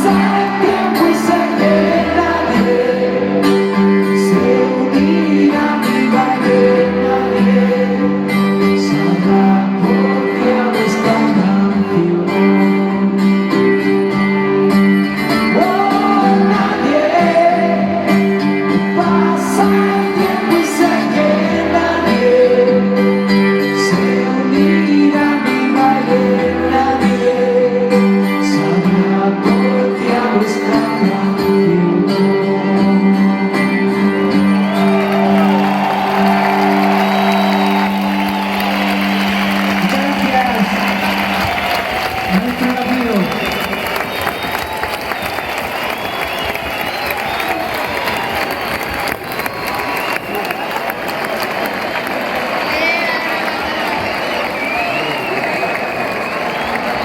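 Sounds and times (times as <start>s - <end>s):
song with singing and chords: 0.0s - 44.6s.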